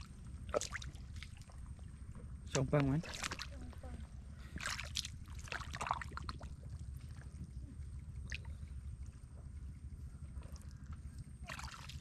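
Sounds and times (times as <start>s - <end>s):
water splashes: 0.0s - 1.9s, 2.5s - 7.5s, 11.4s - 12.0s
steady low rumble: 0.0s - 12.0s
water sloshing and trickling: 0.0s - 12.0s.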